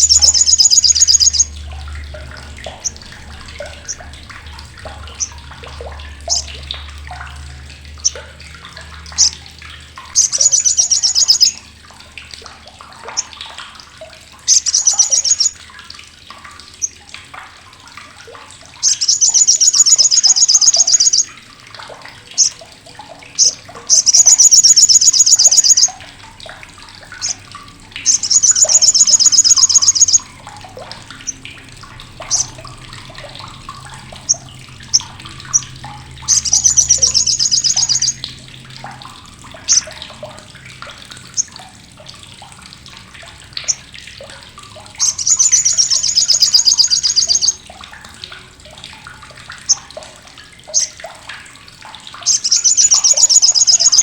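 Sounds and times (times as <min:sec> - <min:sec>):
bird harsh chattering call: 0:00.0 - 0:01.5, 0:23.4 - 0:25.9, 0:28.1 - 0:30.2.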